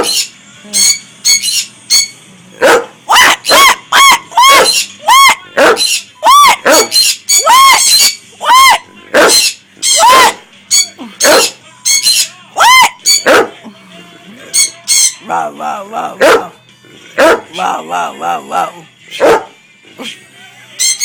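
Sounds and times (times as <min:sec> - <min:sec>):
shrill bird calls: 0:00.0 - 0:02.2, 0:03.1 - 0:13.3, 0:20.8 - 0:21.0.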